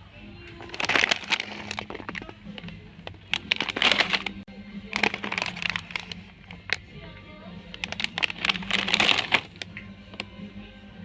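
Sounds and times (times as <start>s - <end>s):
crunchy snack packet crinkling: 0.6s - 4.4s, 5.0s - 6.8s, 7.8s - 9.7s.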